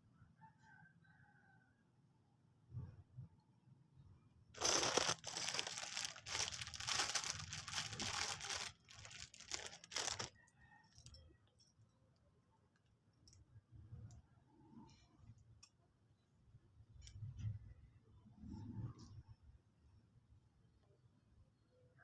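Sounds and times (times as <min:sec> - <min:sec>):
packaging tearing and crumpling: 0:04.6 - 0:10.3.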